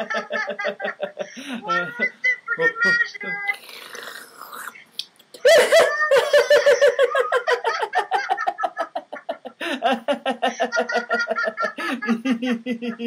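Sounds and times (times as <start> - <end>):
people laughing in pulses: 0.0 - 2.3, 5.4 - 13.0.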